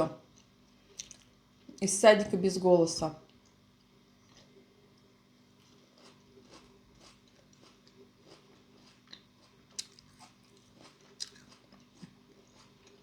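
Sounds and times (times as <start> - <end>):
chewing and mouth sounds: 0.3 - 1.3, 4.2 - 13.0.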